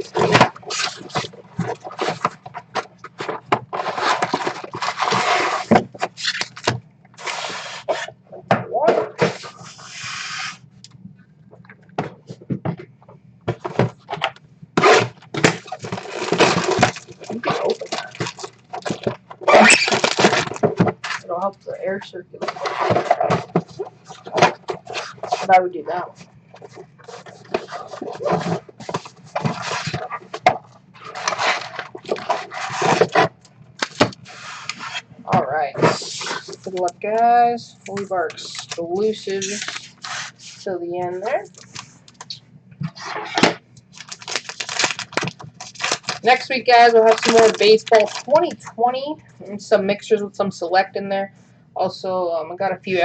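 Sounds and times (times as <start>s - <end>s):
card packs rustling and crinkling: 0.0s - 8.1s, 14.8s - 21.2s, 26.6s - 35.0s, 35.8s - 48.7s
wrapper tearing and crinkling: 3.8s - 7.4s, 14.9s - 21.2s, 38.4s - 38.8s, 39.4s - 40.4s, 43.9s - 48.3s.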